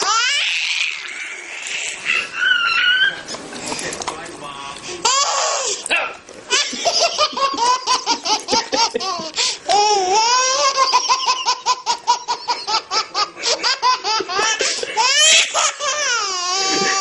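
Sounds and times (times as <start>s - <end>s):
baby squealing: 0.0s - 3.2s, 15.0s - 17.0s
baby laughing: 6.5s - 17.0s.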